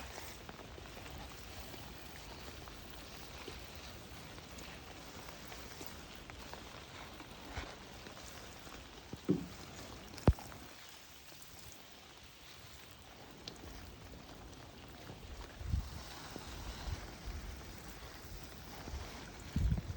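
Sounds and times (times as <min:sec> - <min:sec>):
light rain pattering: 0:00.0 - 0:19.9.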